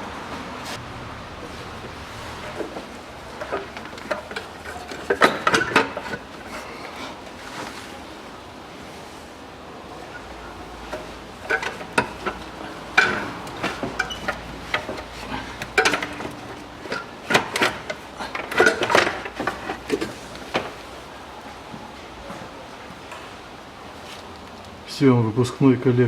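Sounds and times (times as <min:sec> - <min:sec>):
tools knocking and scraping metal: 0:01.8 - 0:07.8, 0:10.1 - 0:20.8
metal parts clinking and clanking: 0:02.4 - 0:07.0, 0:10.1 - 0:20.8.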